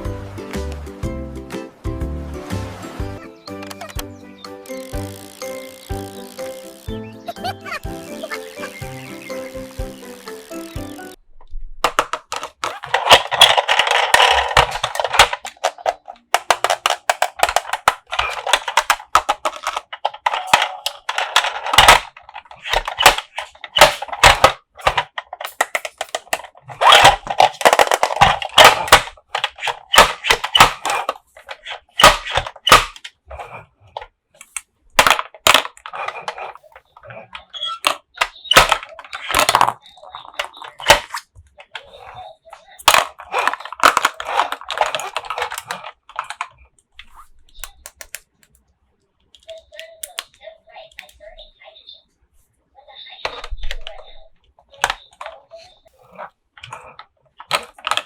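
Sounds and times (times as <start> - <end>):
sharp clicks and taps: 43.9 - 51.2.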